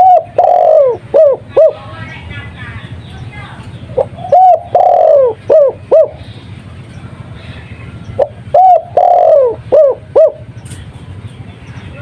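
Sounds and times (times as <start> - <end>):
dove cooing: 0.0 - 2.0, 3.9 - 6.4, 8.1 - 10.5.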